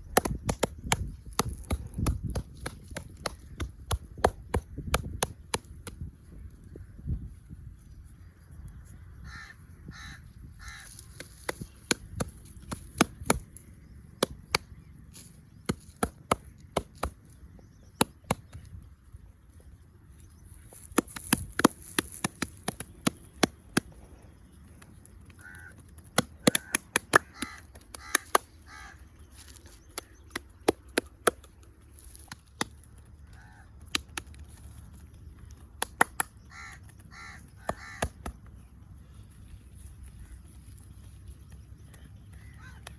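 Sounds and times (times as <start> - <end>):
crows cawing: 9.2 - 11.2, 25.3 - 29.5, 33.2 - 33.9, 36.4 - 38.4, 42.4 - 42.9
hand slaps on body: 26.1 - 28.5, 35.8 - 36.4.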